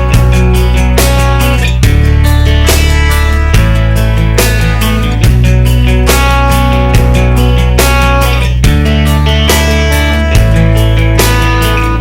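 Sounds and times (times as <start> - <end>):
rock music with guitar: 0.0 - 12.0.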